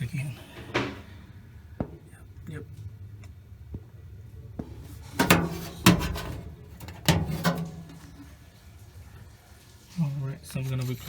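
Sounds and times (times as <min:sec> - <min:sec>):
metallic clanks and knocks: 0:00.6 - 0:01.2, 0:04.6 - 0:08.4.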